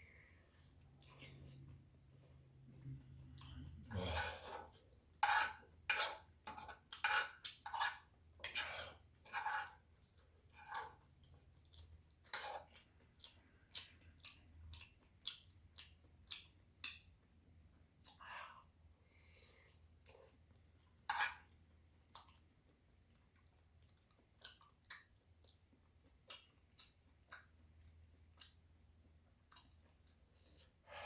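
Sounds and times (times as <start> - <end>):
chewing mouth sounds: 9.6 - 17.0, 22.0 - 22.5, 23.1 - 28.6, 29.4 - 30.6.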